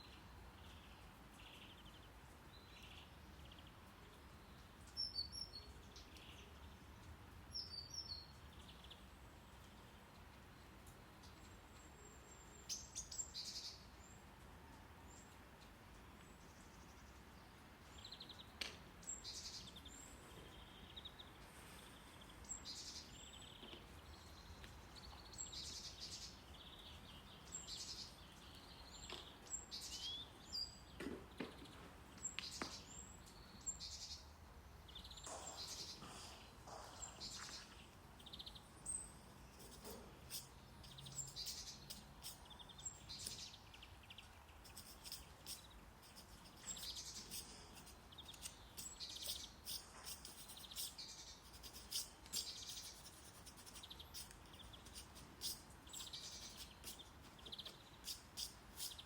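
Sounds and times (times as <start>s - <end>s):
low hiss of brown noise: 0.0s - 59.0s
faint bird chirps: 34.9s - 59.0s.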